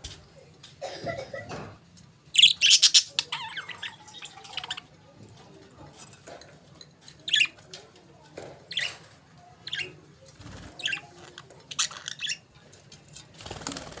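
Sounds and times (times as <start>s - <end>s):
budgerigars chirping: 2.4s - 4.8s, 11.7s - 12.4s.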